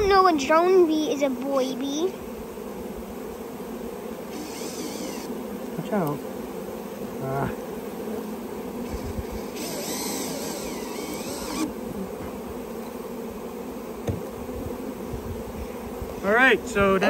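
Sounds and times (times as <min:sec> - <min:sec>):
honeybees buzzing: 0:00.0 - 0:17.0
high hiss: 0:08.8 - 0:11.7.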